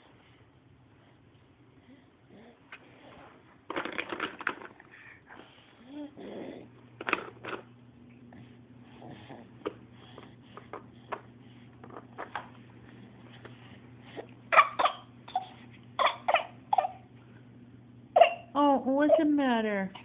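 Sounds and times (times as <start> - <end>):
baby fake coughing: 14.5 - 17.1, 18.2 - 18.5.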